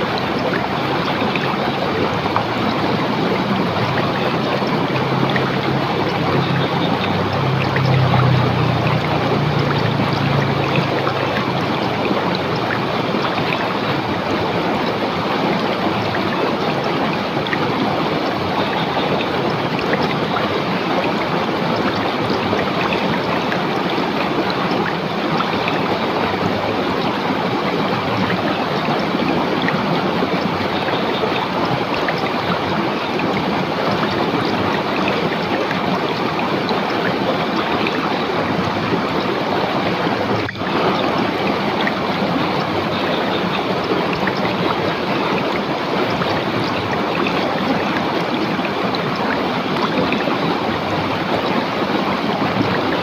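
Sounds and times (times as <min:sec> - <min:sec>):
river water rushing over rocks: 0:00.0 - 0:53.0.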